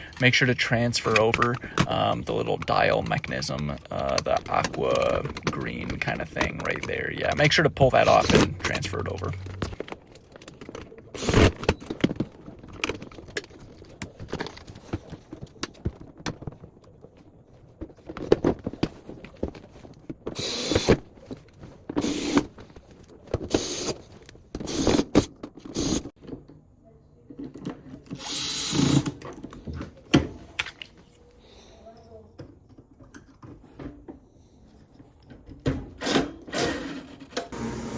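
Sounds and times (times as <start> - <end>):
power drill-driver bursts: 20.4 - 21.0, 22.0 - 22.5, 23.5 - 24.0, 24.7 - 26.1, 28.2 - 29.1.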